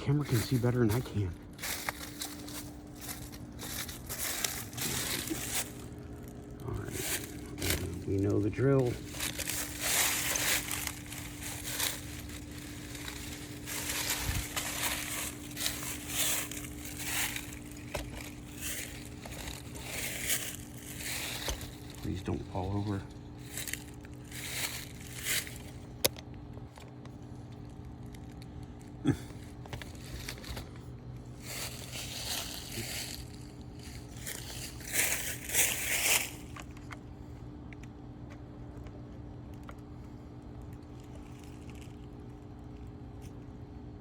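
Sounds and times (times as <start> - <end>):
faint steady hum: 0.0 - 44.0
plastic case scraping and crunching: 7.0 - 22.2.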